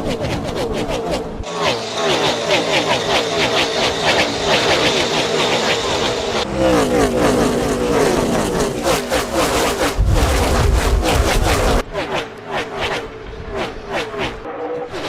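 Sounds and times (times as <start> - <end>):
race car engines revving: 0.0 - 15.0.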